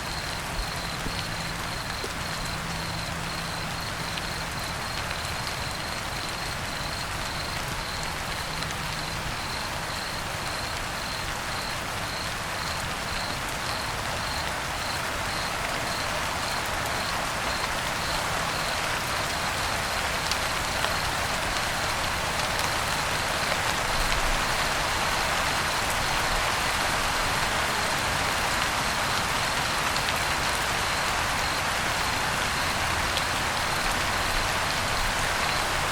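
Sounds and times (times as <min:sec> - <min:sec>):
cricket chirping: 0:00.0 - 0:21.7, 0:29.5 - 0:35.9
steady rain falling: 0:00.0 - 0:35.9.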